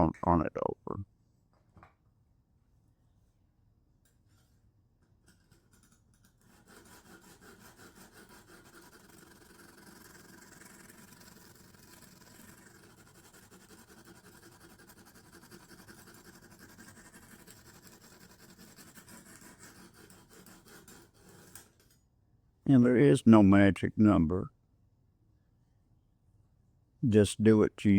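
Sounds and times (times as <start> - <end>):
hone scraping knife edge: 17.3 - 22.0.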